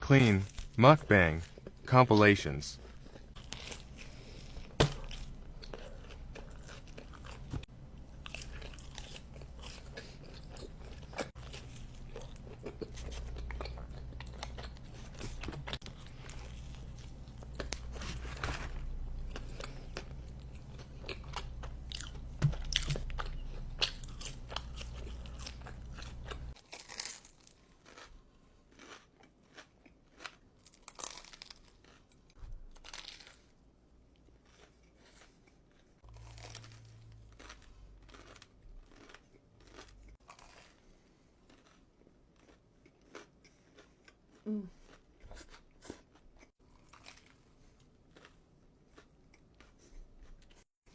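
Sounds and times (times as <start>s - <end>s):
low steady hum: 0.0s - 28.7s, 35.4s - 40.2s
crunchy food chewing: 2.8s - 50.7s.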